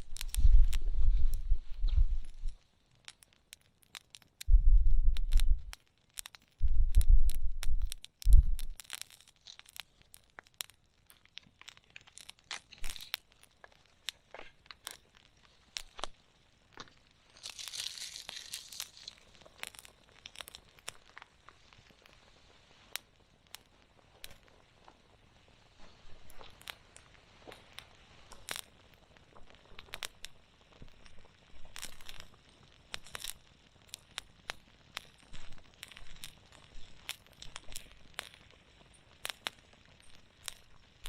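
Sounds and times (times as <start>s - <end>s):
low rumbles: 0.0s - 2.6s, 4.5s - 5.8s, 6.6s - 8.8s
campfire crackling and popping: 0.0s - 41.0s.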